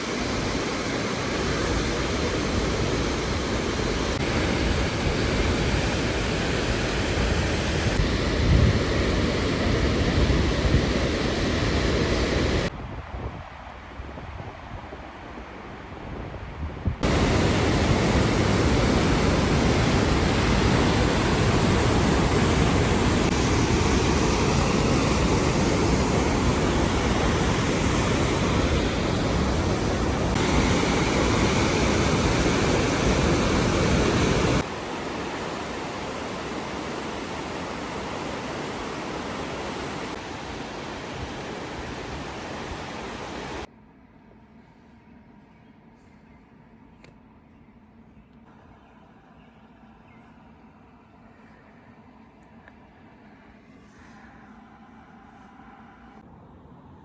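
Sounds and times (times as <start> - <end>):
waterfall roaring: 0.0 - 12.7, 17.0 - 43.7.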